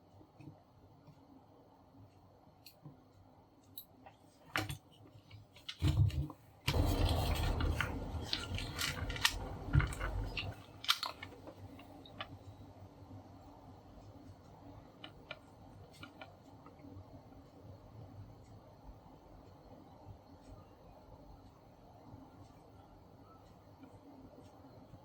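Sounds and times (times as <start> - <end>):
rustling and clatter: 4.6 - 12.3.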